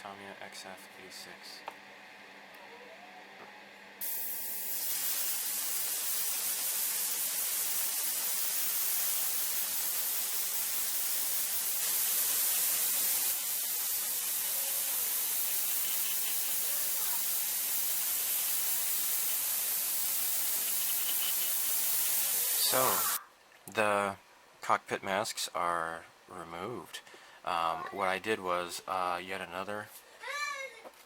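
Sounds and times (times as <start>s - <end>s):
airbrush spraying hiss: 4.0s - 23.2s.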